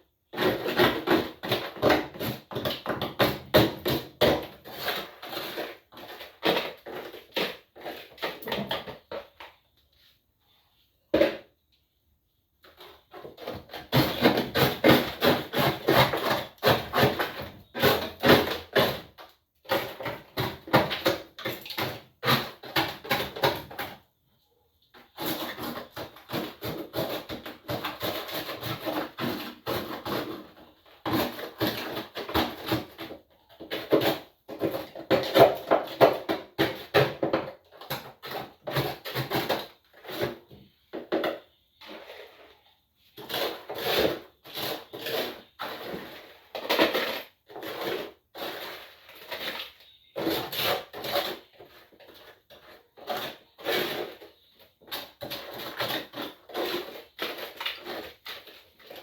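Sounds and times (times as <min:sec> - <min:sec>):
containers knocking and clattering: 0:00.3 - 0:09.6, 0:12.7 - 0:24.1, 0:25.0 - 0:42.4.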